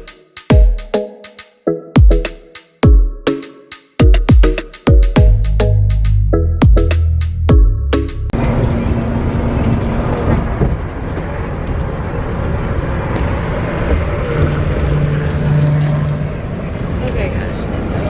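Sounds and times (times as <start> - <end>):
road vehicle rumble: 5.4 - 18.0.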